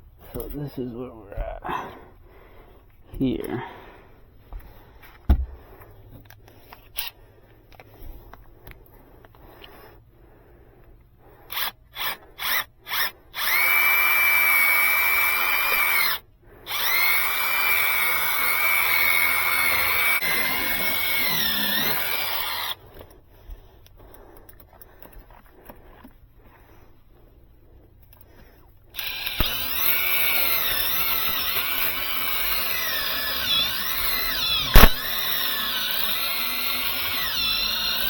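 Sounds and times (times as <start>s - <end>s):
power drill running: 11.5s - 22.8s, 28.9s - 38.0s.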